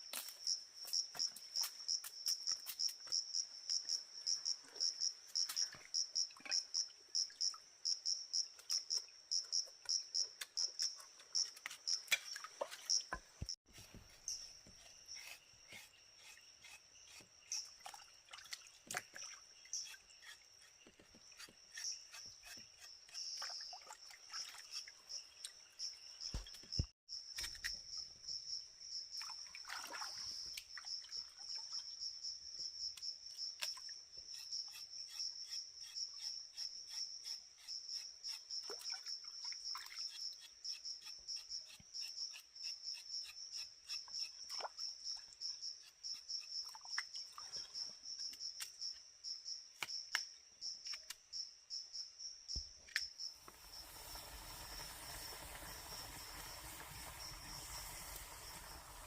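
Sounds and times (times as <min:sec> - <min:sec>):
insects trilling chorus: 0:53.2 - 0:59.0.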